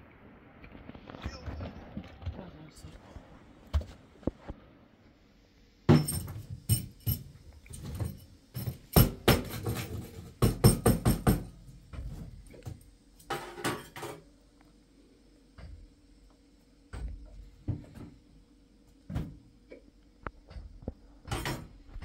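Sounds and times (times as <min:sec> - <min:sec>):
sharp knocks and clatters: 0:05.9 - 0:14.2.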